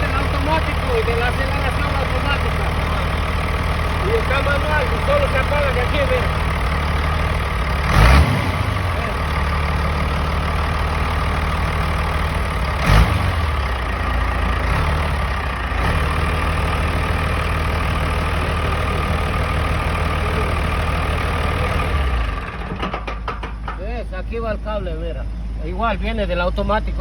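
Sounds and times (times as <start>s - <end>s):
diesel engine idling: 0.0s - 27.0s
sharp engine knock: 22.4s - 24.0s.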